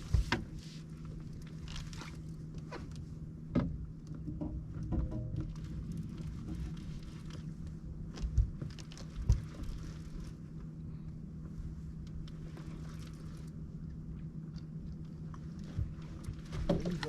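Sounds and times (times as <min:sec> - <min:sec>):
boat motor humming: 0:00.0 - 0:17.0
dull thumps: 0:03.5 - 0:05.8.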